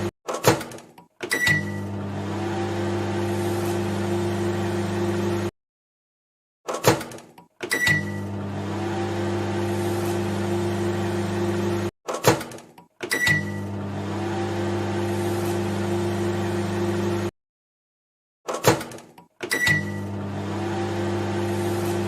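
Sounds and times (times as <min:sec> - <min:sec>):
microwave oven humming: 0:01.4 - 0:05.5, 0:07.8 - 0:11.9, 0:13.2 - 0:17.3, 0:19.5 - 0:22.0.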